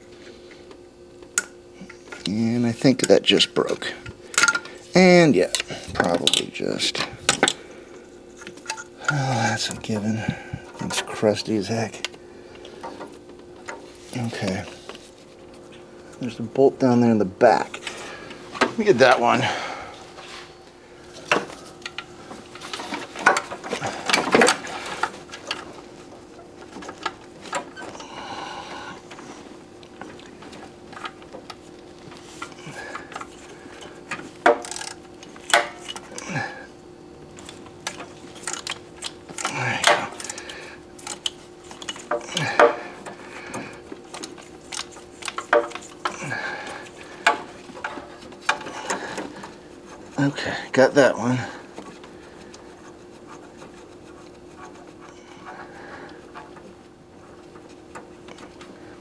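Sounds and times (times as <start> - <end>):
faint steady hum: 0.0 - 59.0
metal hand tools clinking: 1.4 - 7.6, 37.3 - 46.4
ratchet wrench clicking: 34.4 - 36.2, 37.5 - 42.2.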